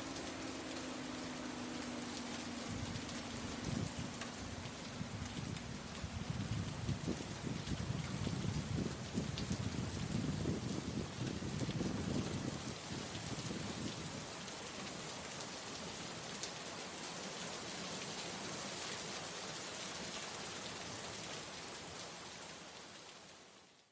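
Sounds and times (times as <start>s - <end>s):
heavy rain falling: 0.0s - 23.6s.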